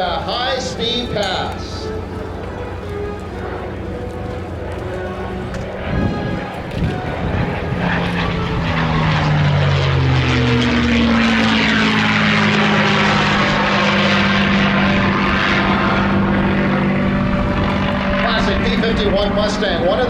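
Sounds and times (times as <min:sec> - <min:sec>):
propeller plane passing: 0:00.0 - 0:20.0.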